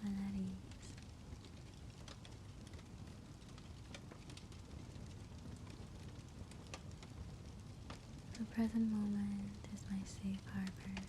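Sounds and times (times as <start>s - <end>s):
rain falling: 0.0s - 11.0s.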